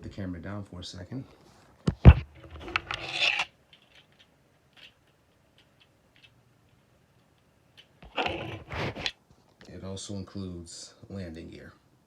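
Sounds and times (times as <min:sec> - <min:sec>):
handling rustle: 0:01.3 - 0:09.6
plastic parts clicking: 0:02.0 - 0:09.1.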